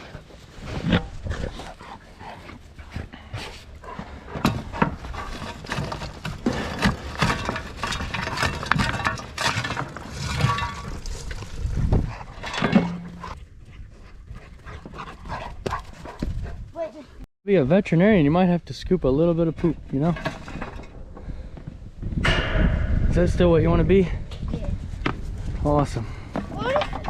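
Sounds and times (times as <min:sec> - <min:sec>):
scraping and knocking: 0:03.9 - 0:13.4, 0:19.6 - 0:21.2.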